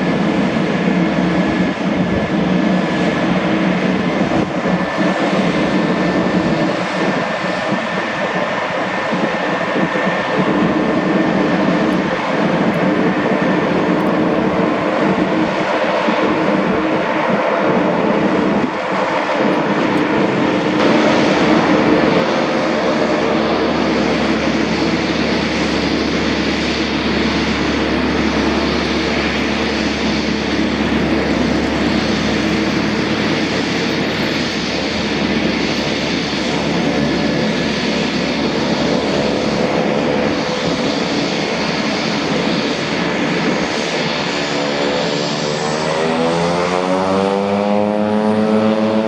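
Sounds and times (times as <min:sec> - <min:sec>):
airplane engine running loudly: 0:00.0 - 0:49.0
deeper hum: 0:20.0 - 0:42.3.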